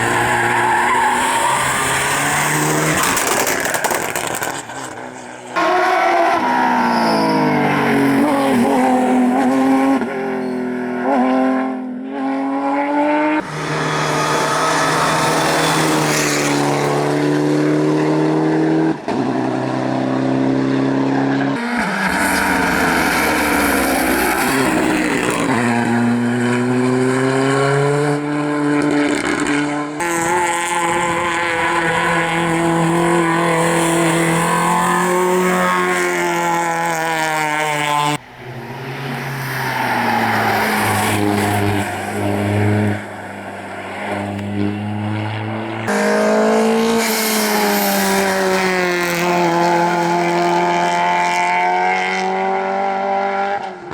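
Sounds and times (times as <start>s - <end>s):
rally car engines revving: 0.0s - 53.9s.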